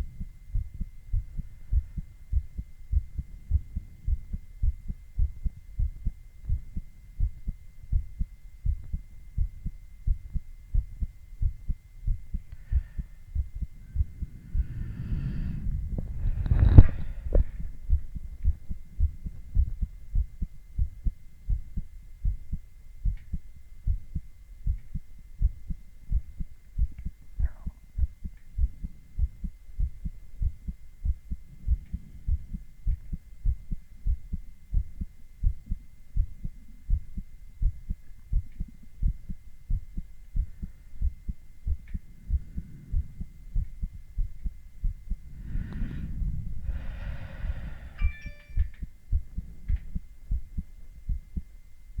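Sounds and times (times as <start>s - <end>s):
heartbeat through stethoscope: 0.0s - 52.0s
faint high tone: 48.0s - 48.8s.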